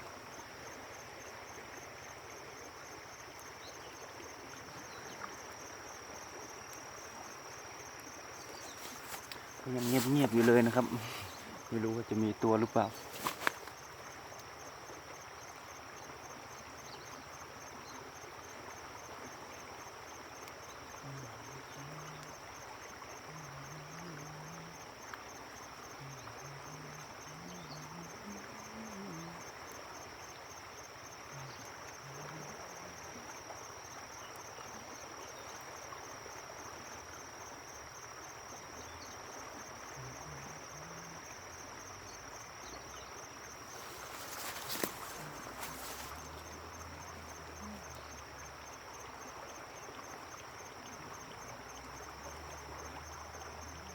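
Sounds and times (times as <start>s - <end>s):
soft hiss: 0.0s - 18.0s, 41.8s - 53.7s
crickets trilling: 0.0s - 53.9s.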